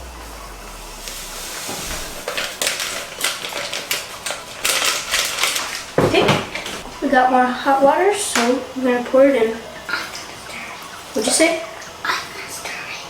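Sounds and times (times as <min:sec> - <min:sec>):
packet crinkling and rustling: 0:01.0 - 0:07.2.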